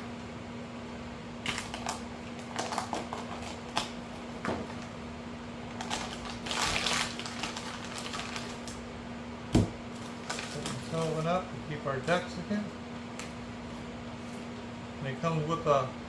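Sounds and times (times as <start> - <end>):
plastic packaging crinkling: 1.4 - 3.9, 5.7 - 8.8, 9.9 - 11.5.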